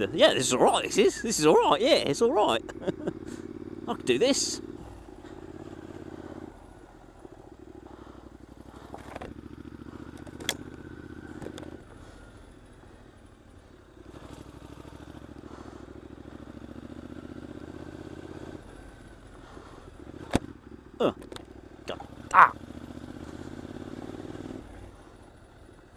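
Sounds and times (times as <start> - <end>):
motorcycle engine running: 0.0 - 25.9.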